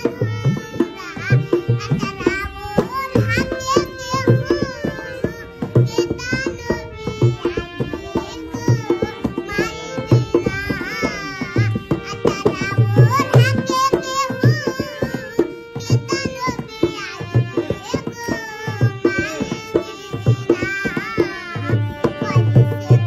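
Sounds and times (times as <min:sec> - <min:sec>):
girl singing: 0:00.0 - 0:23.0
hand drum rhythm: 0:00.0 - 0:23.0.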